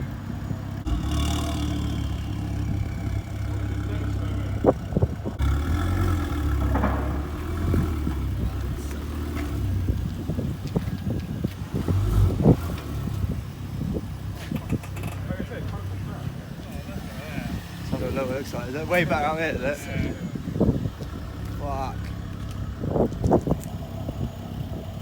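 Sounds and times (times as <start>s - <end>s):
car engine running at low revs: 0.0s - 25.0s
knocks and clunks: 6.5s - 12.9s.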